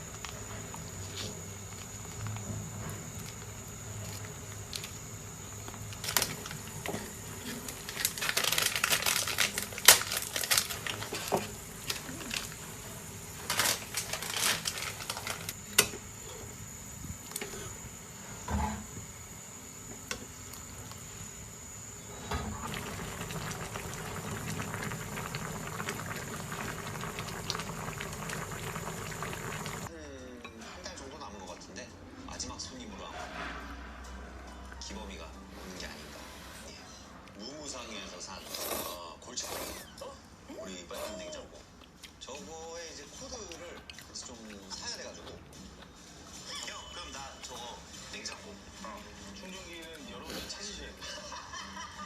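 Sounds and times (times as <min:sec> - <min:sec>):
pot boiling hiss: 0:00.0 - 0:29.9
packaging rustling: 0:07.6 - 0:12.6, 0:13.4 - 0:15.6.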